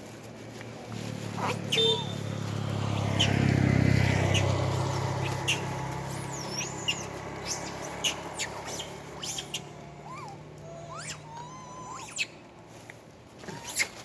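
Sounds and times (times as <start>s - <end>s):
low engine hum: 0.0s - 14.0s
high chirps and squeaks: 1.4s - 2.2s, 5.2s - 12.4s.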